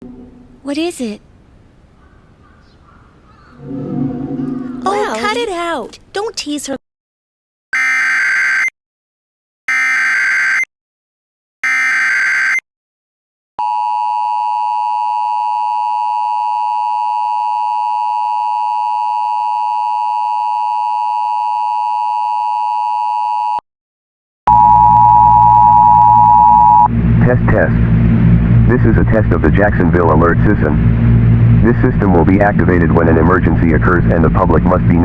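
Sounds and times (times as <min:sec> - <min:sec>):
low hum: 0:00.0 - 0:01.9, 0:03.5 - 0:05.7, 0:24.5 - 0:35.0
two-tone attention signal: 0:24.5 - 0:26.9
short steady tone: 0:24.5 - 0:27.0.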